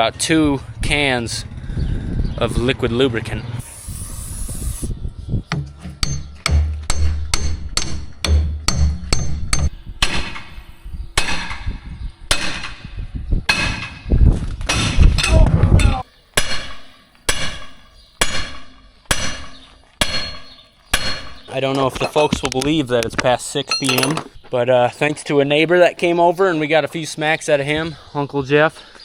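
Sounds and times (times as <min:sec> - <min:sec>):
loud low rumble: 0:00.0 - 0:10.0
sledgehammer ringing on steel: 0:05.6 - 0:10.4.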